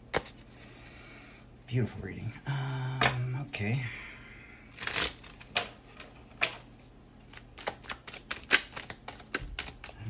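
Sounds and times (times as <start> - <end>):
cards snapping and tapping: 7.3 - 10.0.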